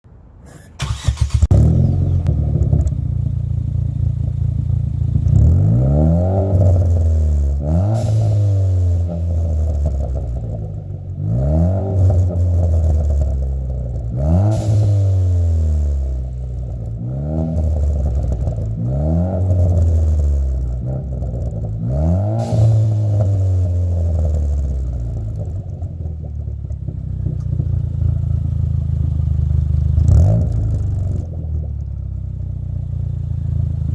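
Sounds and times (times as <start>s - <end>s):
car engine revving: 0.8s - 31.7s
exhaust burbles and pops: 22.4s - 28.3s.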